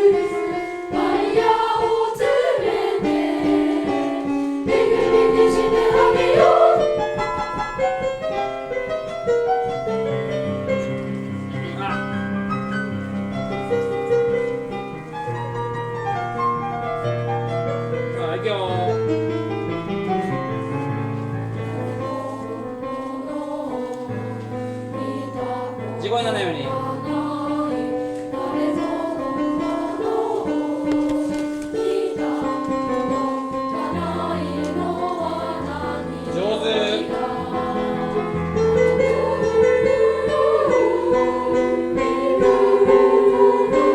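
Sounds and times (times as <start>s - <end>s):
choir singing: 0.0s - 8.2s, 21.6s - 43.9s
piano accompaniment: 0.0s - 43.9s.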